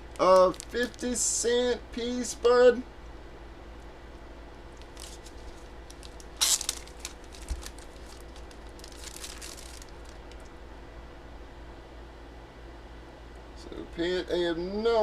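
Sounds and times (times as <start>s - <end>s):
packaging clicking and crinkling: 0.0s - 1.0s, 4.7s - 10.5s.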